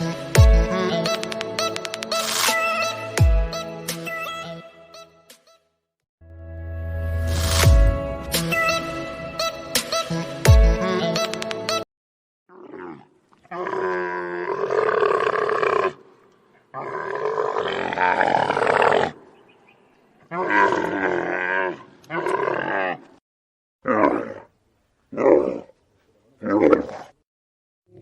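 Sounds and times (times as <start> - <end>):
camel calling: 20.2 - 23.1.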